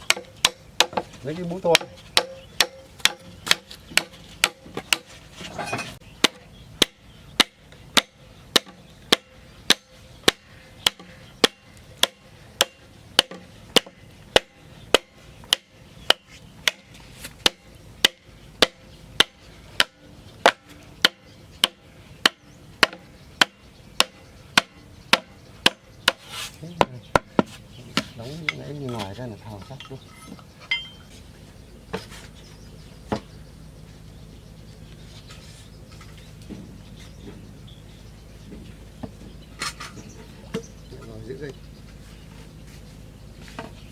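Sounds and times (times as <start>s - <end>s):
hand tool striking bamboo: 0.0s - 31.0s.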